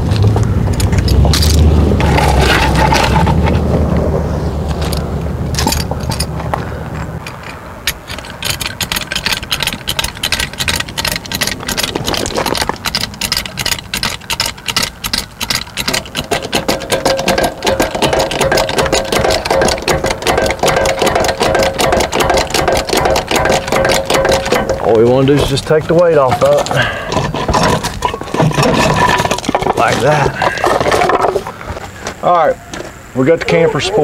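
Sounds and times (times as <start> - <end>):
jack clicking: 7.2 - 31.5.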